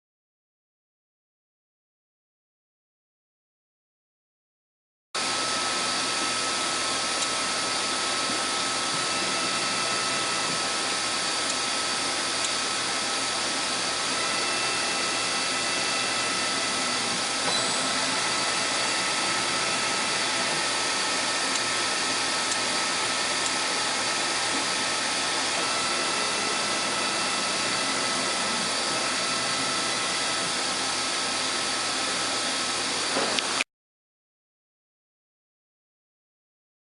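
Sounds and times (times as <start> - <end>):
lathe hiss with high whine: 5.3 - 33.0.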